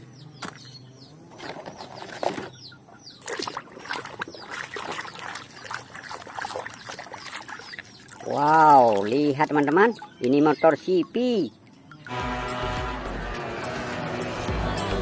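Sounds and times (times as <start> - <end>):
small birds chirping: 0.0 - 12.1
water splashing and sloshing: 1.3 - 12.1.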